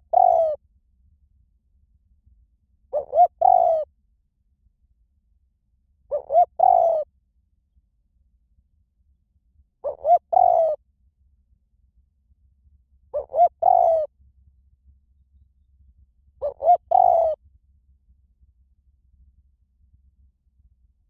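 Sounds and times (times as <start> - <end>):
dove cooing: 0.0 - 0.6, 2.9 - 3.9, 6.1 - 7.1, 9.8 - 10.8, 13.1 - 14.1, 16.4 - 17.4.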